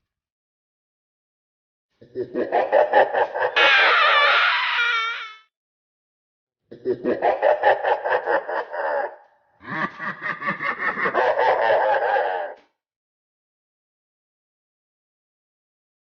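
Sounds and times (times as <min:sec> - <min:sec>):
person laughing: 0:02.0 - 0:05.1, 0:06.7 - 0:12.7.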